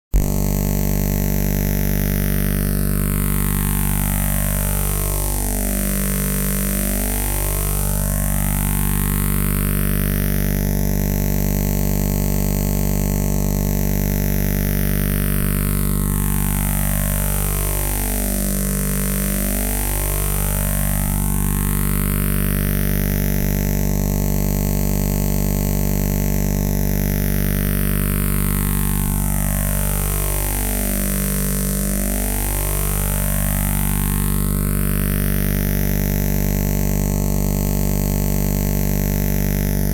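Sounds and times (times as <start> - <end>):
low electrical buzz: 0.2 - 39.9.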